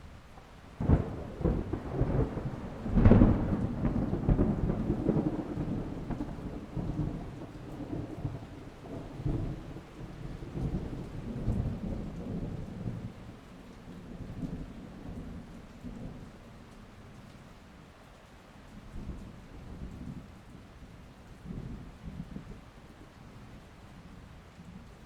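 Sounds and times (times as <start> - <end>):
thunder crack: 0.8 - 8.2
thunder clap: 0.8 - 9.8
low thunder rumble: 0.8 - 13.4.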